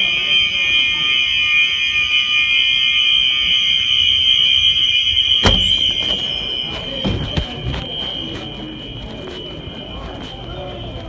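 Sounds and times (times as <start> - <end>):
fire alarm horn: 0.0 - 5.4
thump: 5.4 - 8.4.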